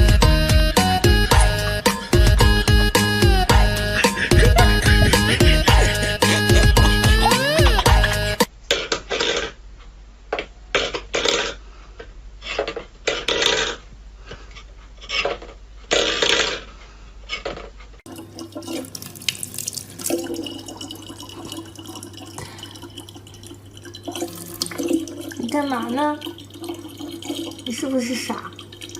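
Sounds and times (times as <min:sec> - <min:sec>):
water splashing and sloshing: 0:18.1 - 0:28.9.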